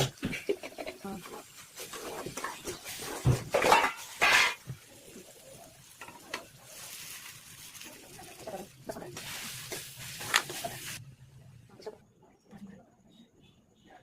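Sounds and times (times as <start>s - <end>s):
stirring noises: 0.2s - 11.0s
noodles sizzling in a pan: 1.3s - 11.0s.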